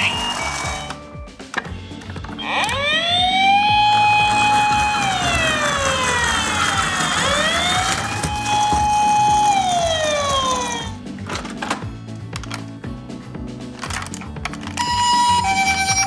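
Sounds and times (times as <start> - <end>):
toy electronic siren wailing: 0.0 - 1.0, 2.4 - 11.0, 14.8 - 16.0.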